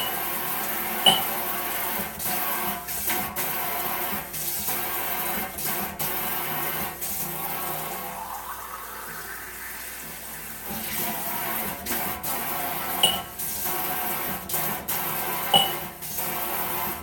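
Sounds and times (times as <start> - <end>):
sharp clink: 1.1 - 1.3, 13.0 - 13.3, 15.6 - 15.8.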